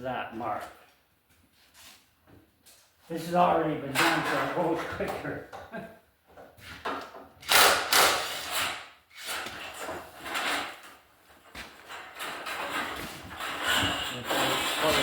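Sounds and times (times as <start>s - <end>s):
scraping against wood: 8.3s - 15.0s.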